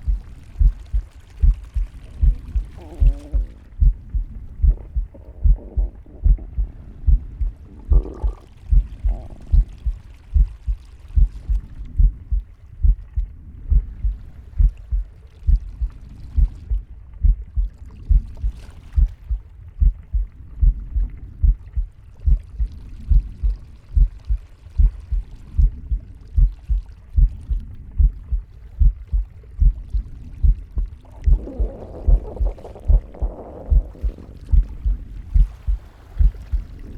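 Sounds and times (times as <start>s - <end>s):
heartbeat thumps: 0.0s - 36.9s
soft breathing rushes: 0.0s - 36.9s
short gurgle: 7.4s - 10.0s, 30.8s - 36.9s.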